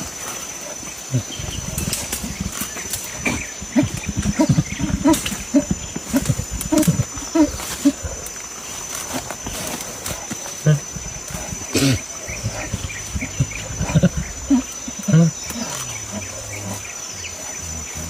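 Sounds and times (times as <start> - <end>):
lion grunting and growling: 0.6 - 8.8, 9.5 - 18.0.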